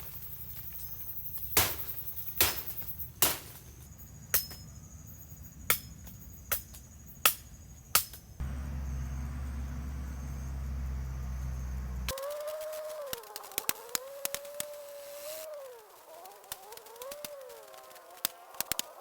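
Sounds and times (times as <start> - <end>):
insects buzzing: 0.0 - 19.0
hand tool strikes: 1.5 - 3.6
steady low hum: 8.4 - 12.1.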